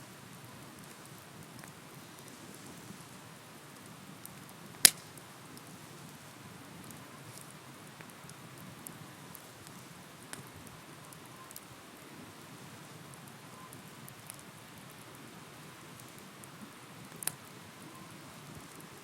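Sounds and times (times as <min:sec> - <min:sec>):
bonfire crackling: 0:00.0 - 0:19.0
sharp fire cracks: 0:00.2 - 0:19.0.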